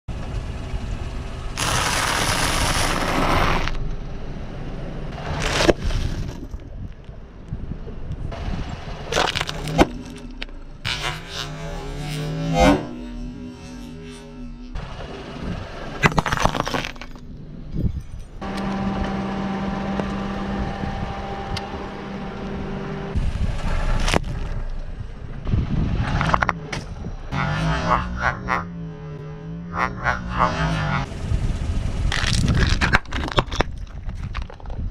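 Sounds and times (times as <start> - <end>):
car rumbling: 0.1 - 34.9
car tyre crushing objects: 1.6 - 3.9, 5.1 - 7.3, 9.0 - 11.3, 16.0 - 18.4, 23.2 - 25.4, 32.0 - 34.9
sharp crack: 1.6 - 4.0, 9.1 - 11.8.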